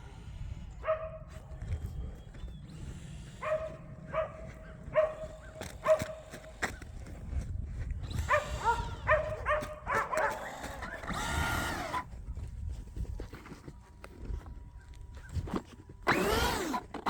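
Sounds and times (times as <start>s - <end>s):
dog barking: 0.8s - 1.3s, 3.4s - 6.3s, 8.3s - 10.9s.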